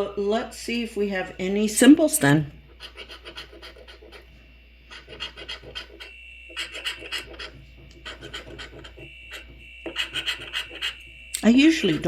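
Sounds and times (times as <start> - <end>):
scratching lottery ticket: 2.8 - 4.3, 4.9 - 11.0, 11.6 - 12.0.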